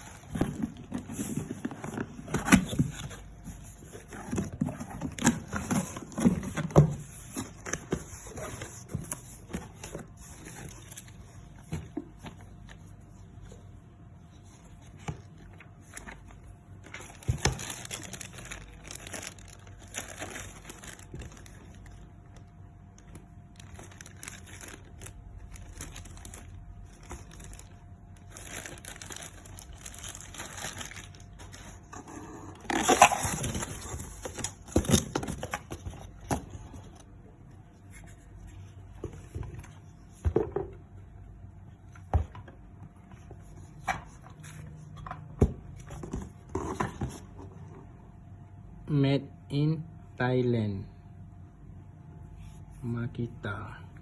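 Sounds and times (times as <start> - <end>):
cardboard packaging rustling and tearing: 0.0 - 11.6, 14.5 - 22.1, 23.0 - 31.9, 32.5 - 36.4.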